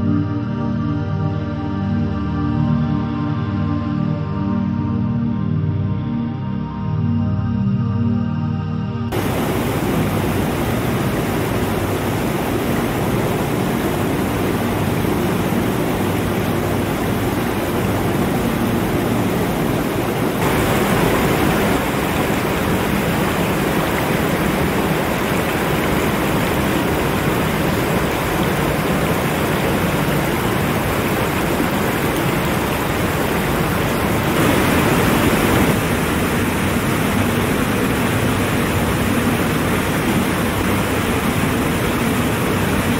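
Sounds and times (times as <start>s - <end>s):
waterfall roaring: 9.1s - 42.9s.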